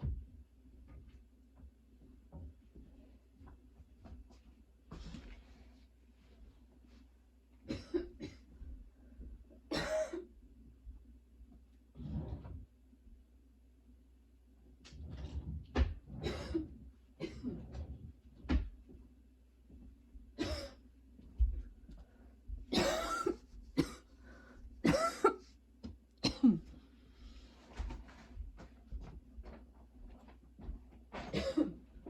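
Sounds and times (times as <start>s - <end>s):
girl coughing: 7.7s - 8.4s, 9.7s - 10.3s, 16.2s - 17.6s, 20.4s - 20.8s, 22.7s - 24.0s, 24.8s - 25.4s, 26.2s - 26.7s, 31.3s - 31.8s.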